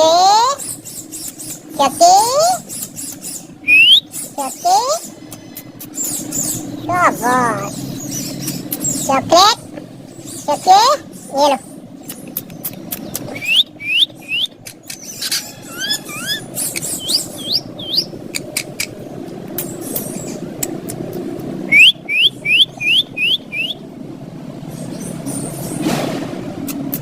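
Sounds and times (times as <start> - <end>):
parakeet chirping: 0.0 - 23.8
sharp clicks: 12.0 - 13.6, 18.3 - 21.5.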